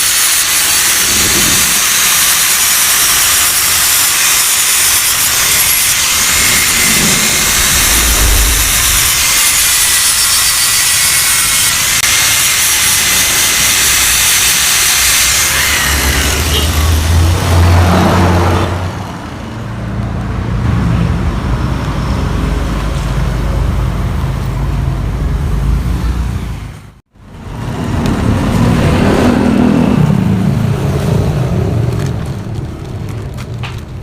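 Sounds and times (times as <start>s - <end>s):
angle grinder whining on steel: 0.0s - 19.4s
low mechanical rumble: 5.3s - 10.8s.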